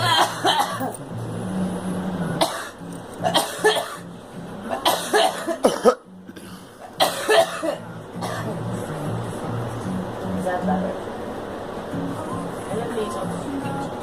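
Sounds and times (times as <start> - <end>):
girl coughing: 0.0 - 0.9, 2.4 - 4.0, 4.7 - 8.6.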